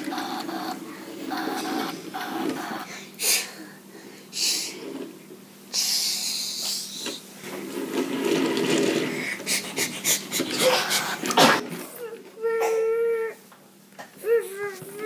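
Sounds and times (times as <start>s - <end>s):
toy trains rolling: 0.0s - 3.4s, 4.3s - 5.2s, 5.8s - 12.0s.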